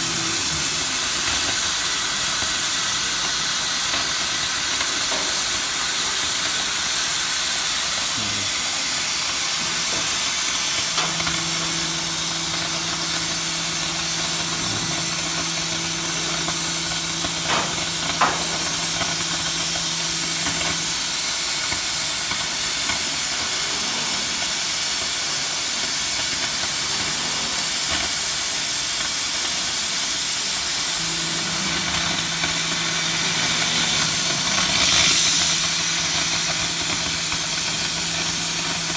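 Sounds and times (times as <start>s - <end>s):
low even hum: 0.0s - 1.8s, 9.6s - 21.2s, 31.0s - 38.9s
cutting torch hissing: 0.0s - 38.9s.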